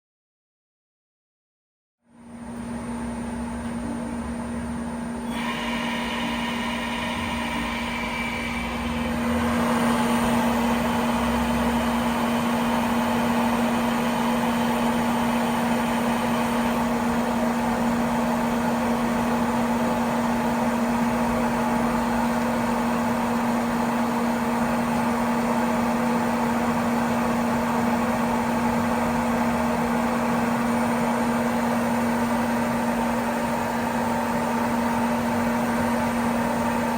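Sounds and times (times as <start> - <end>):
lathe machine hum: 2.3 - 36.9.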